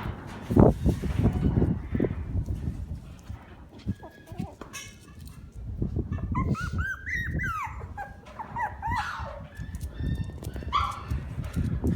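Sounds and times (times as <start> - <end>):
dog whimpering: 6.2 - 11.1.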